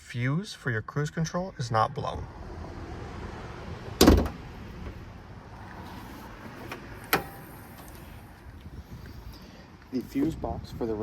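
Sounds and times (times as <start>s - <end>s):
loud thud: 4.0s - 4.4s.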